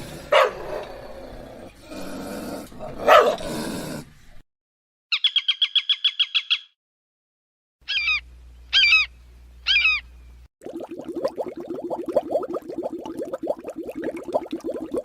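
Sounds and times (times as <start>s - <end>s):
bird chirps: 5.1s - 6.8s, 7.9s - 10.4s
small bird trilling: 7.9s - 10.0s.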